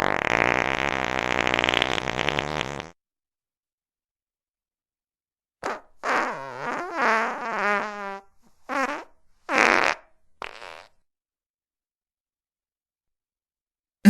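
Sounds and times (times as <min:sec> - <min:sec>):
farts: 0:00.0 - 0:03.0, 0:05.6 - 0:11.1.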